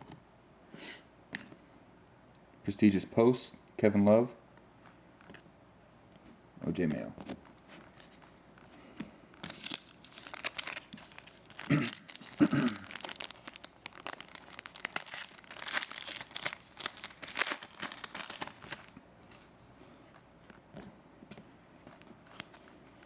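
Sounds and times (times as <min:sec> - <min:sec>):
foil wrapper tearing and crinkling: 0:09.4 - 0:19.0.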